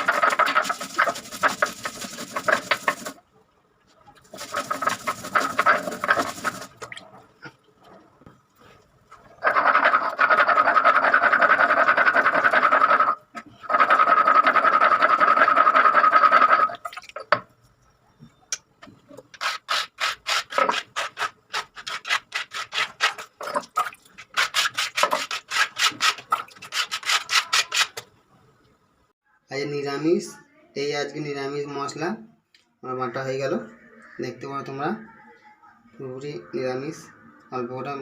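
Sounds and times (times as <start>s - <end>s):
spices grinding into paste: 0.0s - 3.2s, 4.3s - 6.8s, 9.4s - 16.8s, 19.3s - 23.5s, 24.2s - 28.0s
quick rubbing strokes: 4.4s - 6.8s.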